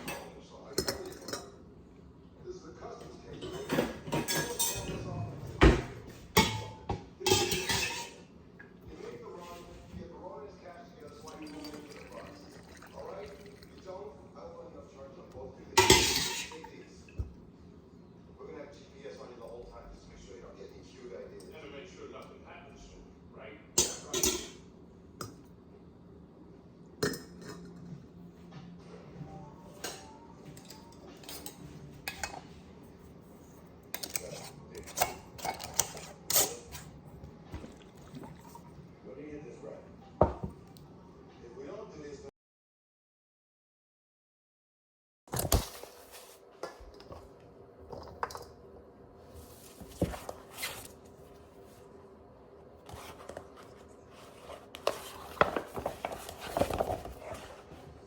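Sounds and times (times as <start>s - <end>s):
dishes and utensils clinking: 0.0s - 1.6s, 3.3s - 8.3s, 15.8s - 17.3s, 23.8s - 24.6s, 29.7s - 32.6s, 33.9s - 38.6s
objects being handled: 49.4s - 51.1s, 52.9s - 58.0s.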